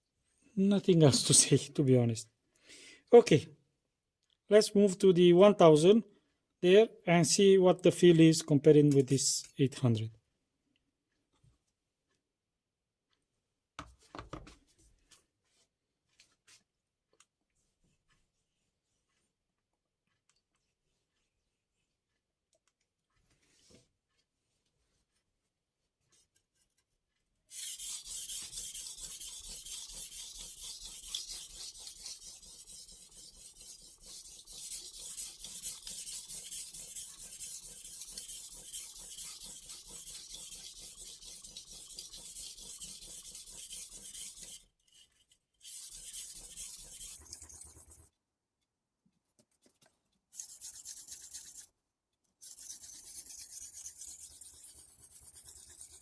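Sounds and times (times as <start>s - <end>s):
knife scraping on whetstone: 27.5s - 48.1s, 50.4s - 51.7s, 52.4s - 56.0s.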